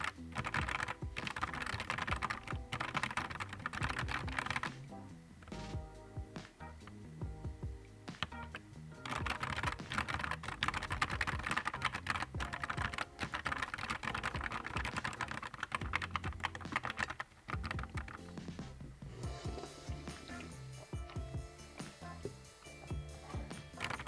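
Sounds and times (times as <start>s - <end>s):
mechanical keyboard typing: 0.0s - 5.6s, 8.2s - 18.4s, 23.3s - 24.0s
background music: 0.0s - 24.0s.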